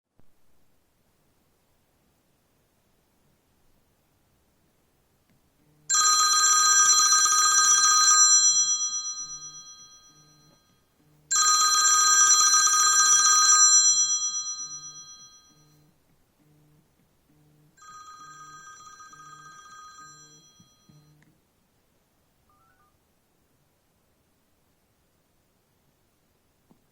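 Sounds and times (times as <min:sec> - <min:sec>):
phone ringtone high trill: 0:05.9 - 0:15.9, 0:17.8 - 0:21.2.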